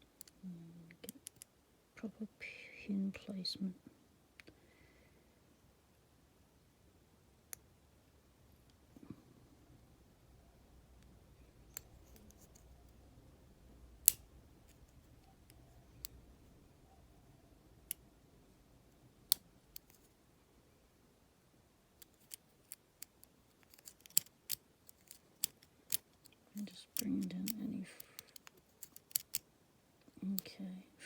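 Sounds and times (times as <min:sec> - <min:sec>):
lock pick metal clicks: 0:14.0 - 0:14.8, 0:22.0 - 0:29.5.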